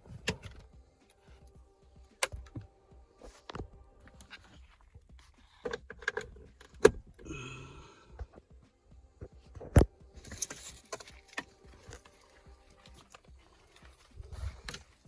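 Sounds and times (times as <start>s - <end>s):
plastic parts clicking and rattling: 9.7s - 15.0s.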